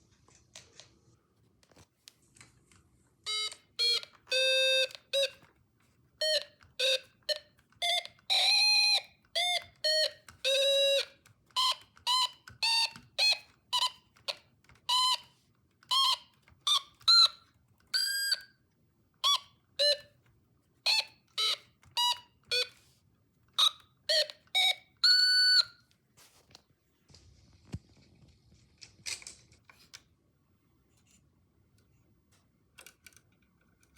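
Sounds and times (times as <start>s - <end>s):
electronic beeps from small speaker: 3.3s - 5.4s, 23.6s - 25.8s.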